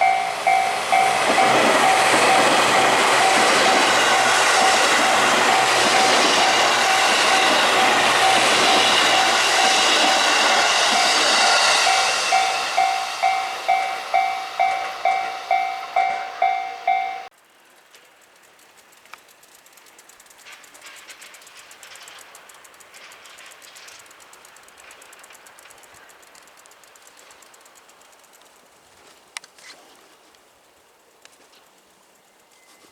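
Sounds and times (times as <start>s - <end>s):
level crossing warning bell: 0.0s - 17.3s
train passing: 0.0s - 17.3s.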